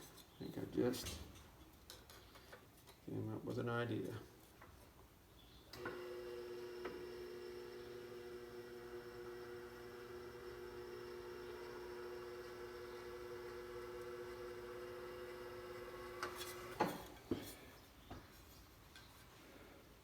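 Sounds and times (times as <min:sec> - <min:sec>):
motor shutting off with clunk: 0:05.7 - 0:17.1
electric motor humming: 0:05.8 - 0:16.8.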